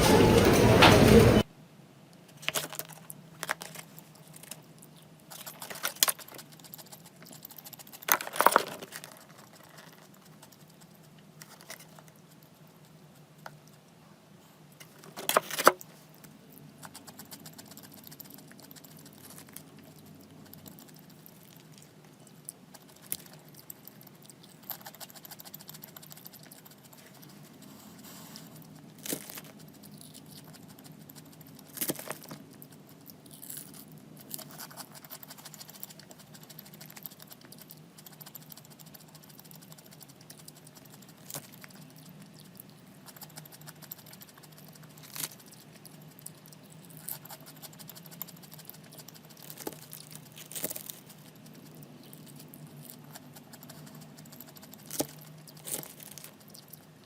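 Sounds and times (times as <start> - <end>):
small objects clicking and rustling: 2.3 - 4.6, 7.3 - 10.1.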